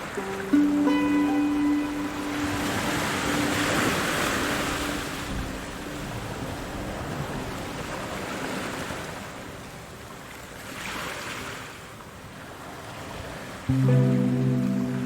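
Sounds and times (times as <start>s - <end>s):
ocean surf washing in: 0.0s - 9.4s, 13.7s - 15.0s.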